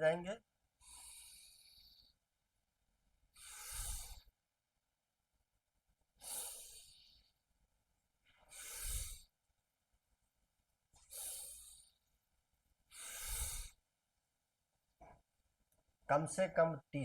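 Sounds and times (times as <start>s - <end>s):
man breathing deeply: 0.8s - 2.2s, 3.3s - 4.4s, 6.2s - 7.4s, 8.3s - 9.3s, 11.0s - 12.1s, 12.9s - 13.8s.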